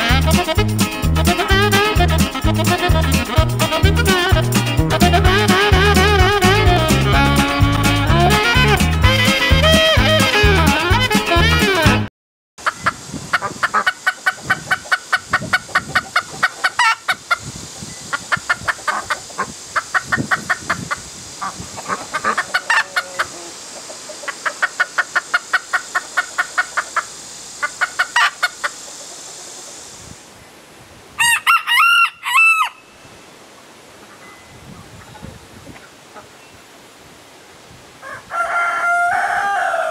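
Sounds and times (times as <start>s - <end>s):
chickens clucking: 0.0s - 11.7s, 12.6s - 30.0s, 34.9s - 36.4s
rooster crowing: 31.2s - 32.9s, 38.0s - 39.9s.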